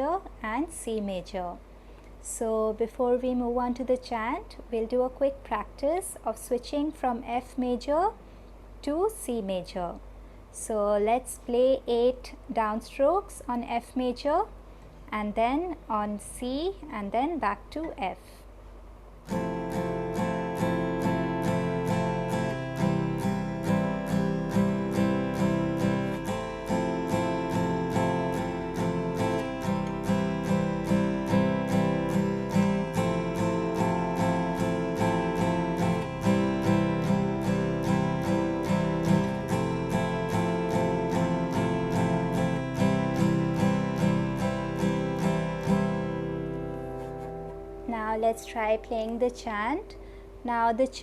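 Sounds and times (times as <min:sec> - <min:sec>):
guitar strumming chords: 0:19.2 - 0:50.4.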